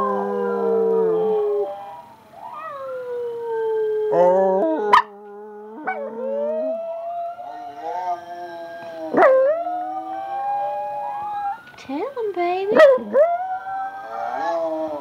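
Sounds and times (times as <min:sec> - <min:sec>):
chihuahua howling: 0:00.0 - 0:11.7, 0:12.8 - 0:15.0
person howling: 0:02.6 - 0:09.2, 0:13.8 - 0:15.0.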